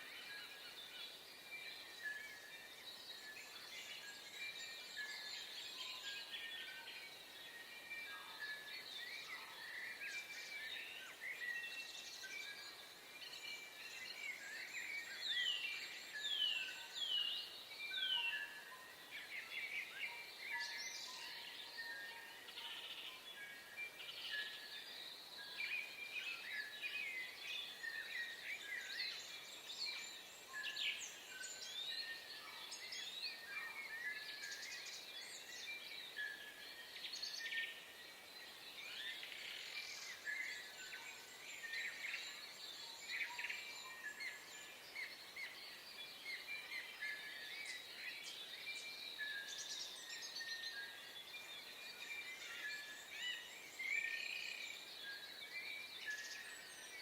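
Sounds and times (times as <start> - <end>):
many birds chirping and trilling: 0.0 - 57.0.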